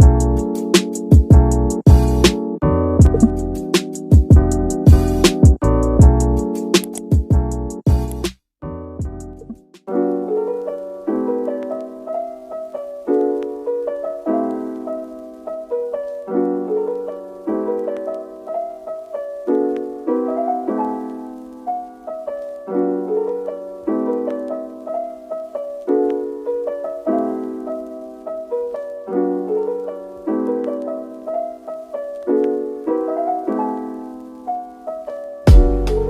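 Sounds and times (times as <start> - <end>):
soft piano chords: 8.7 - 36.0
loud drum beat with heavy bass: 9.0 - 9.4, 35.5 - 35.9.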